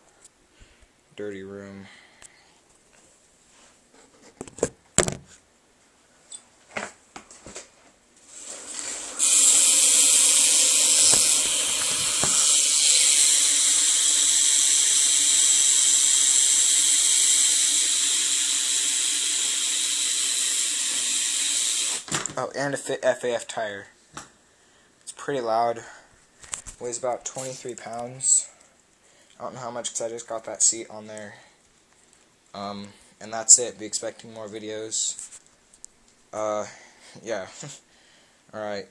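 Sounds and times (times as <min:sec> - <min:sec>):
bike wheel hub buzzing: 0:08.9 - 0:22.1.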